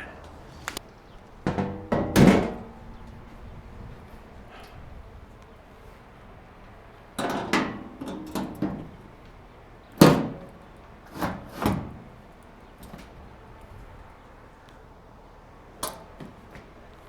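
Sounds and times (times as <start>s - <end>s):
sheet-metal panels knocking: 1.5s - 3.2s.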